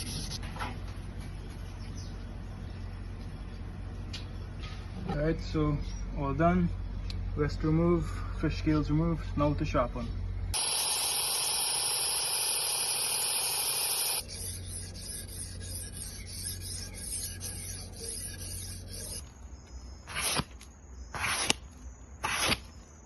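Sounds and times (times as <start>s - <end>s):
knife sharpening scrape: 14.2s - 19.2s.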